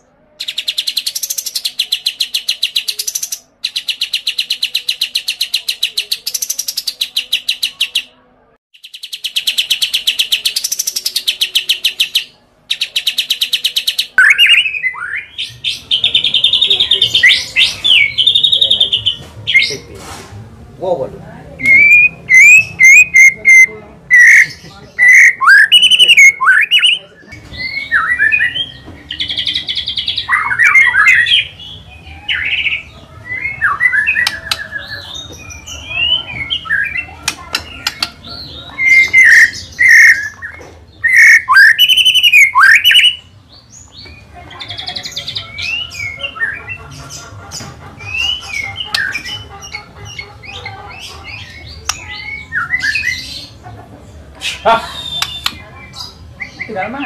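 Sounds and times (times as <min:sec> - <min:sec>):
bird singing whistles and trills: 0:12.0 - 0:19.7, 0:21.6 - 0:37.0, 0:38.7 - 0:43.2, 0:54.5 - 0:56.8.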